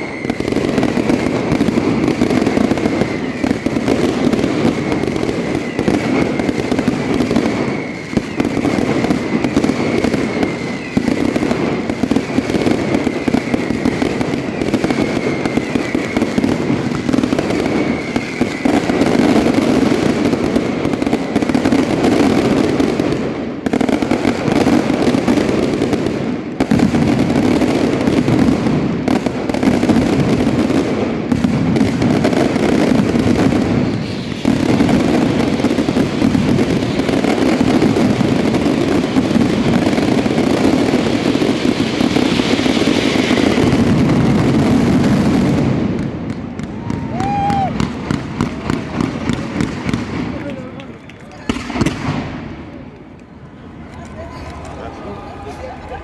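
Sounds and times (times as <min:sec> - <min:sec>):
firework whistle falling in pitch: 0:00.0 - 0:11.4, 0:12.8 - 0:19.6, 0:46.6 - 0:48.0
firework bursts and crackle: 0:00.0 - 0:56.0.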